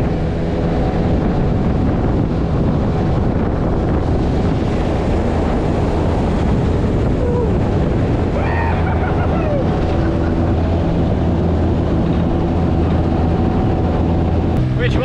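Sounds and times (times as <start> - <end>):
outboard motor running: 0.0 - 15.0
water rushing past hull: 0.0 - 15.0
wind buffeting microphone: 0.0 - 15.0.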